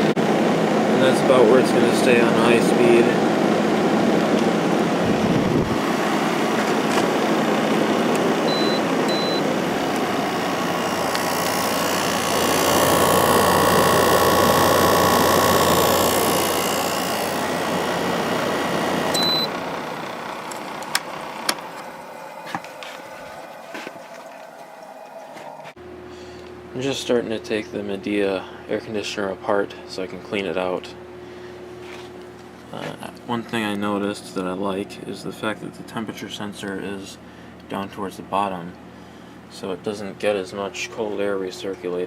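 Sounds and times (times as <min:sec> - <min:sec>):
air conditioner running: 0:00.0 - 0:42.0
short high beeps: 0:08.5 - 0:09.4, 0:19.2 - 0:19.5.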